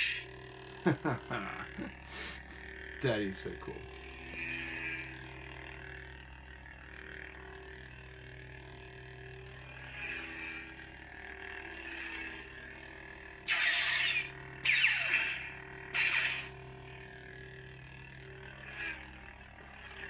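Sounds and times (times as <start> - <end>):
toy lightsaber humming: 0.0 - 20.0.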